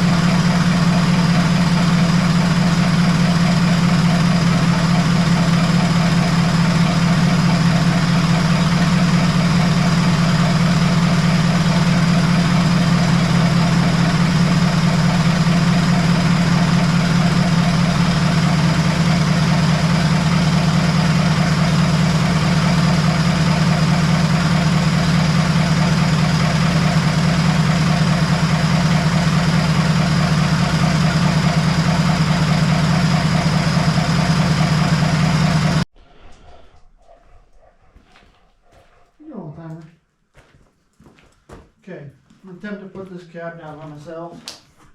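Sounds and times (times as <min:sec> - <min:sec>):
diesel engine idling: 0:00.0 - 0:35.9.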